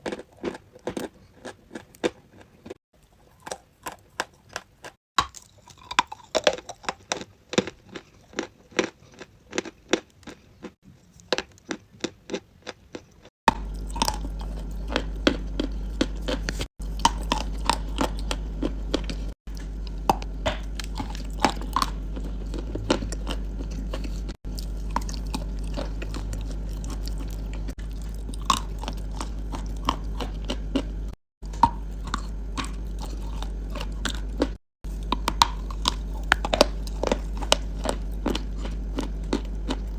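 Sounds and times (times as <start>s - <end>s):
crunchy chewing: 0.0s - 39.9s
steady low hum: 13.5s - 39.9s.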